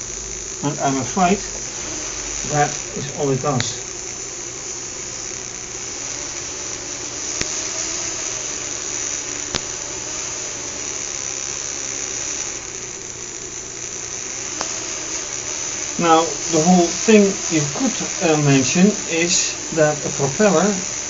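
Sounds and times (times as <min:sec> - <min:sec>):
electric motors whirring: 0:00.0 - 0:21.0
sharp clicks: 0:03.5 - 0:04.2, 0:07.3 - 0:07.6, 0:09.4 - 0:09.8.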